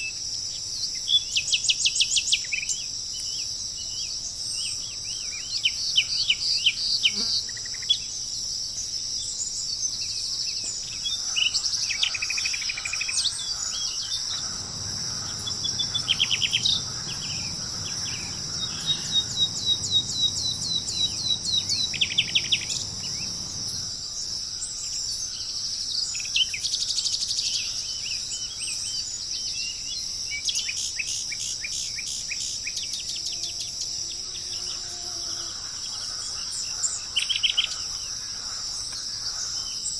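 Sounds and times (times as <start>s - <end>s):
insects droning: 0.0s - 39.9s
birds chirping and trilling: 9.8s - 39.9s.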